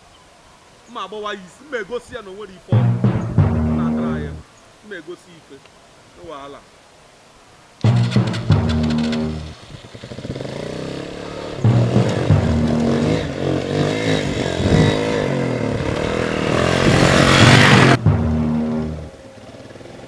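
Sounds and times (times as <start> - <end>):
engine revving: 7.8 - 20.0.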